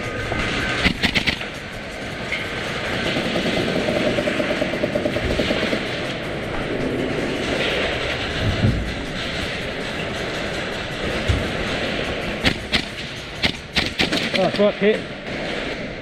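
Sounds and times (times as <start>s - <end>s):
steady background rush: 0.0s - 16.0s
airsoft gunshots: 0.8s - 1.6s, 12.4s - 15.7s.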